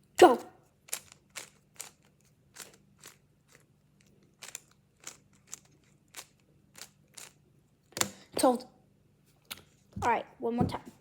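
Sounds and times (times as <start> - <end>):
speed cube plastic clicks: 0.8 - 7.4.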